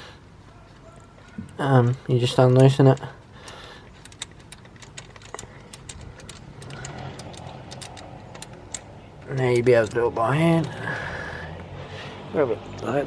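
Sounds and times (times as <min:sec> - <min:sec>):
ratchet wrench clicking: 0:02.5 - 0:11.0.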